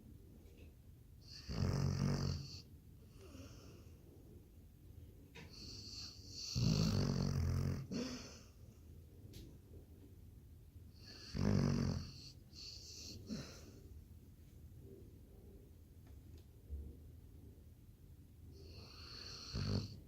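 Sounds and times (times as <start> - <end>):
dog snoring: 1.2 - 3.9, 5.4 - 8.5, 10.9 - 13.8, 18.6 - 20.0.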